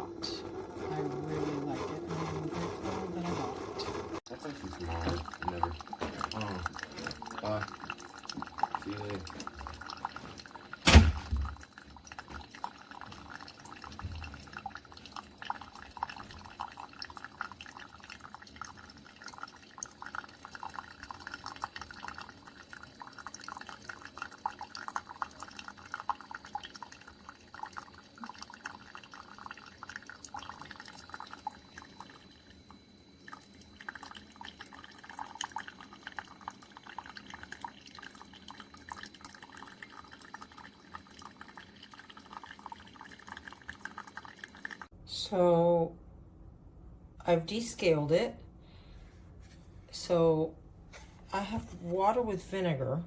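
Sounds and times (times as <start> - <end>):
coffee dripping into mug: 4.3 - 44.9.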